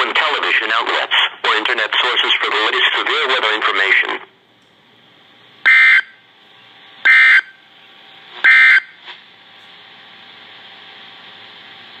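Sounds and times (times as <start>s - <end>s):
radio static hiss: 0.0s - 4.4s.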